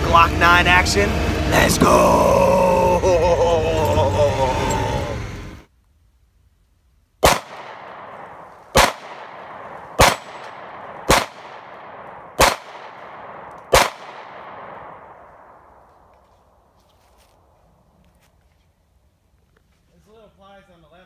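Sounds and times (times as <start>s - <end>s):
pistol shots echoing: 7.2s - 15.9s.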